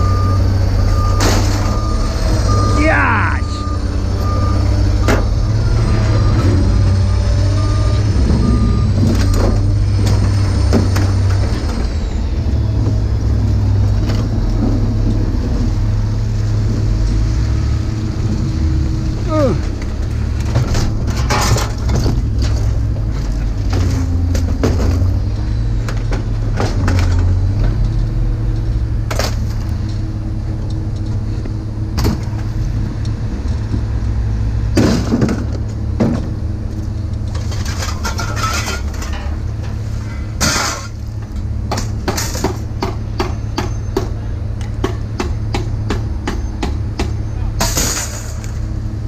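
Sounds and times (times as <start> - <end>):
knocks and clanks of scrap: 1.1 - 1.8, 19.6 - 27.9, 34.8 - 36.4, 37.3 - 44.1, 44.8 - 48.6.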